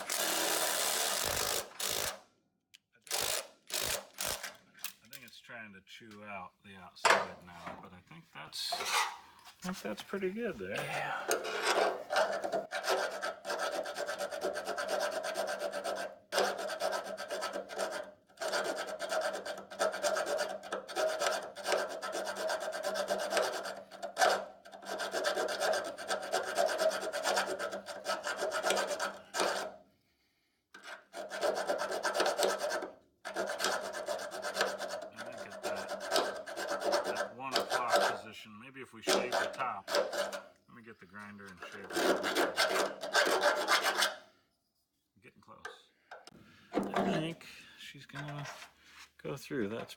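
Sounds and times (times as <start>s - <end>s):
tool rasping on metal: 0.0s - 2.2s, 3.1s - 4.6s, 8.7s - 9.4s, 11.2s - 29.8s, 30.7s - 38.4s, 39.0s - 44.4s.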